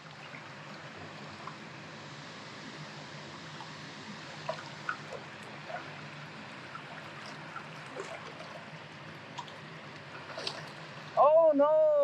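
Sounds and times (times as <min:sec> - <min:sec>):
water plops and trickles: 0:00.0 - 0:01.7, 0:03.4 - 0:11.2
river water rushing: 0:00.0 - 0:11.4.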